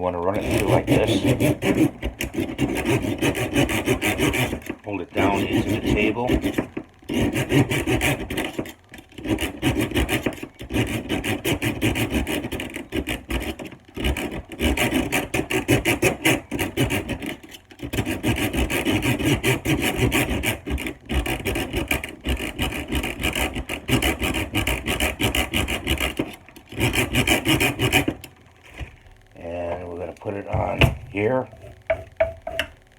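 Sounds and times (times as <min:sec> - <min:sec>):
knife rasping on sharpener: 0:00.3 - 0:28.2.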